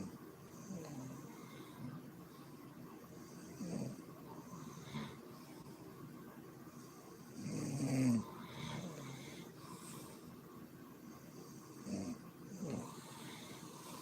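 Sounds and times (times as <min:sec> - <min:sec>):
soft breath: 0:00.0 - 0:03.6, 0:08.2 - 0:11.8, 0:12.6 - 0:14.0
woman snoring: 0:07.4 - 0:09.5, 0:11.8 - 0:14.0.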